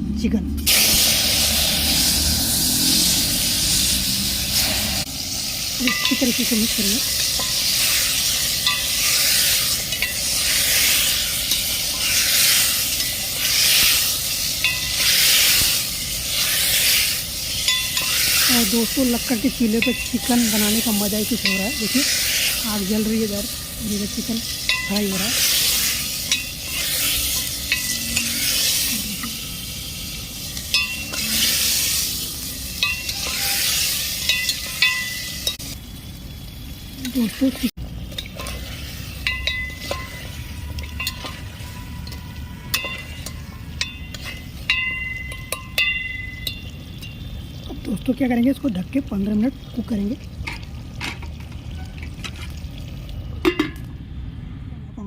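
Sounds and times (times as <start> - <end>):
chicken sizzling in oil: 0.6 - 53.7
spoon scraping metal pot: 5.8 - 29.5, 30.5 - 35.6, 38.1 - 47.2.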